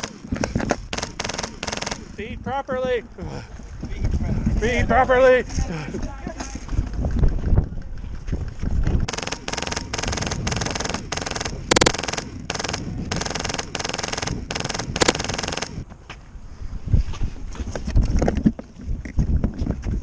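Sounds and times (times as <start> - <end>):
sharp cracks: 0.0 - 2.1, 9.1 - 15.8
airsoft machine gun bursts: 0.9 - 2.1, 9.1 - 15.8.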